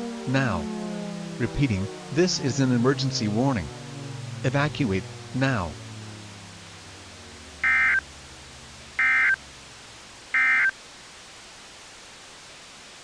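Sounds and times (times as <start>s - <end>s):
faint steady hiss: 5.6s - 13.0s
warbling digital data tones: 7.6s - 8.0s, 9.0s - 9.4s, 10.4s - 10.7s.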